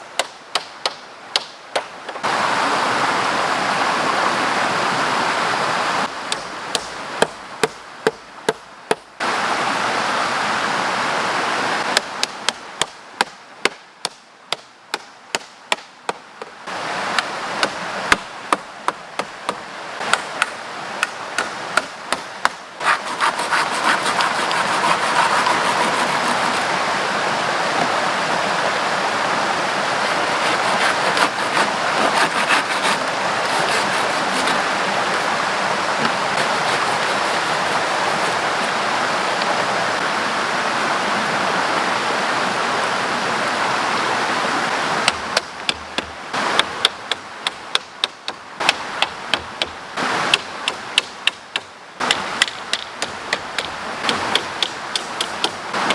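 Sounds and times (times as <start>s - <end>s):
stream flowing: 0.0s - 14.0s, 15.3s - 55.9s
sharp blows on wood: 6.3s - 9.1s, 19.2s - 26.7s, 30.0s - 35.4s, 36.0s - 38.8s, 45.0s - 55.9s.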